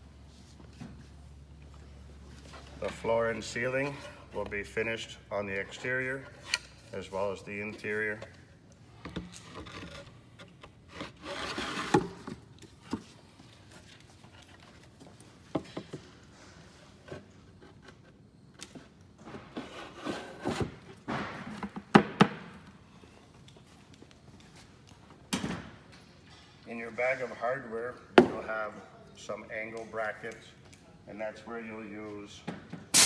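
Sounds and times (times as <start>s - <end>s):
wood scraping on wood: 9.3s - 14.8s, 19.4s - 20.8s.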